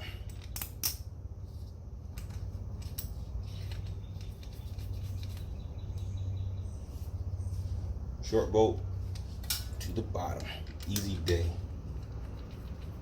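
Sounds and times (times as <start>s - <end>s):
steady low hum: 0.0s - 13.0s
small metallic clicks: 0.2s - 1.1s, 2.1s - 6.1s, 9.0s - 13.0s.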